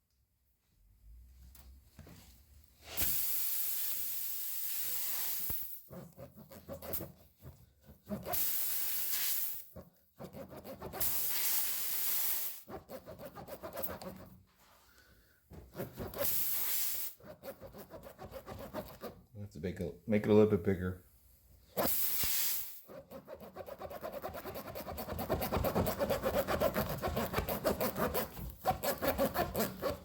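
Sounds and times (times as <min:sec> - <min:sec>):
air hissing out of tire: 0:02.8 - 0:05.8, 0:08.3 - 0:09.7, 0:11.0 - 0:12.7, 0:16.2 - 0:17.2, 0:21.8 - 0:22.9
plug tool scraping: 0:22.9 - 0:30.0.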